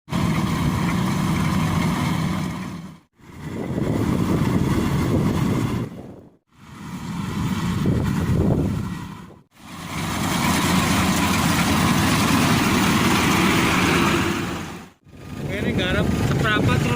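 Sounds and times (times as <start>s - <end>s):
combine harvester engine running: 0.1s - 16.9s.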